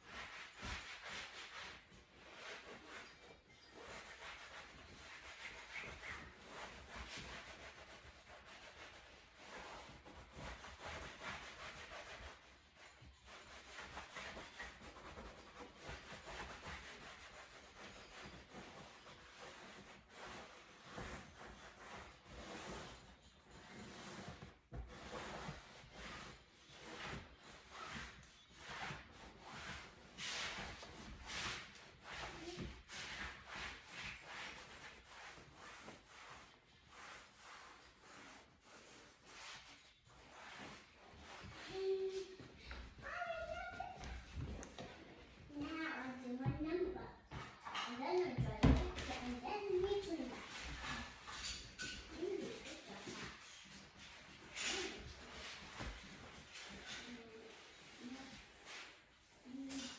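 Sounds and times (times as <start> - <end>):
rubbing on leather upholstery: 3.7 - 42.5.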